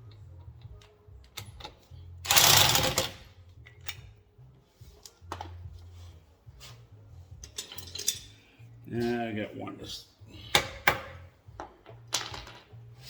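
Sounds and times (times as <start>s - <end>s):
power tool rattle: 2.3s - 3.2s.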